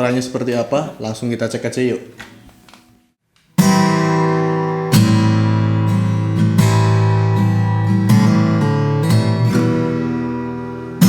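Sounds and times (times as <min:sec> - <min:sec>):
acoustic guitar strumming chords: 0:03.6 - 0:11.0.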